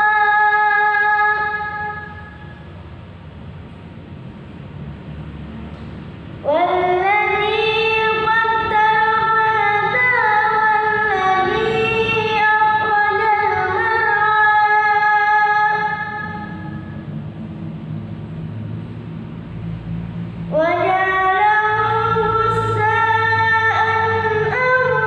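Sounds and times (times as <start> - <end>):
boy chanting melodic recitation: 0.0 - 2.6, 6.4 - 17.0, 20.4 - 25.0.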